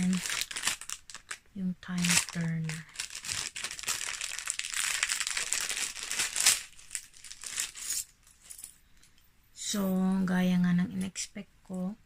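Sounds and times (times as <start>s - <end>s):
packaging crinkling and rustling: 0.0s - 8.6s.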